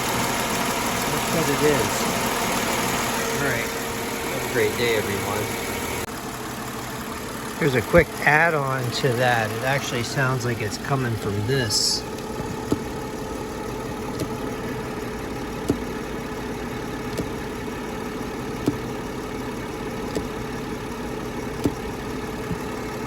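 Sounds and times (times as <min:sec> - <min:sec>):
car engine idling: 0:00.0 - 0:23.0
valve thumping: 0:09.8 - 0:23.0.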